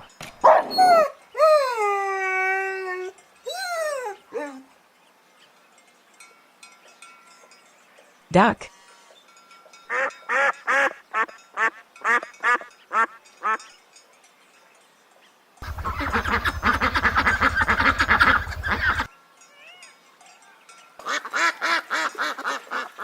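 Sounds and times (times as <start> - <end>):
duck quacking: 15.6 - 19.1, 21.0 - 23.0
low hum: 15.6 - 19.1
rapid duck chattering: 15.6 - 19.1.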